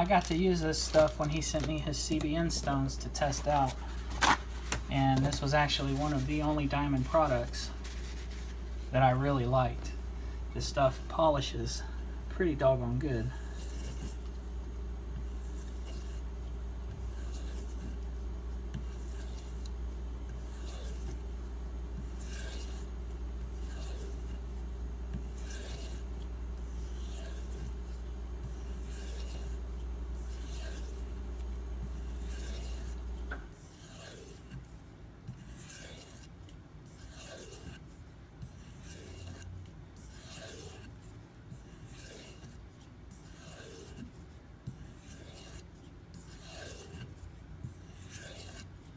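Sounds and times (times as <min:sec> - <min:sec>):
steady low hum: 0:00.0 - 0:48.9
knife rubbing on leather strop: 0:17.0 - 0:33.2.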